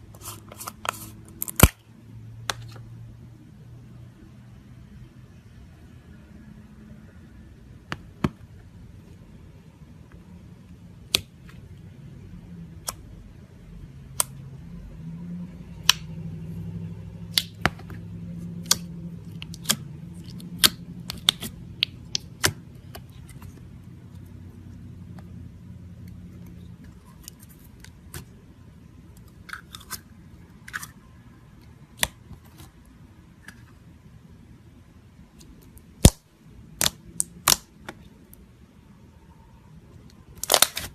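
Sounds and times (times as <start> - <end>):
low steady hum: 0.0 - 40.9.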